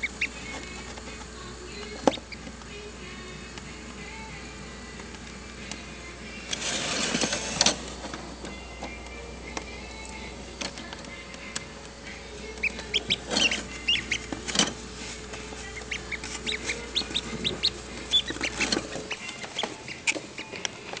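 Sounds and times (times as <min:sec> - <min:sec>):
ducklings peeping: 0:00.0 - 0:02.6, 0:11.4 - 0:21.0
low steady hum: 0:00.0 - 0:21.0.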